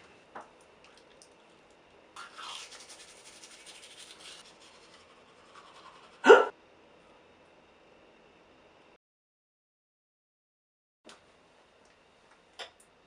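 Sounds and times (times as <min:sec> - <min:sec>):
person hiccuping: 0:06.2 - 0:06.5.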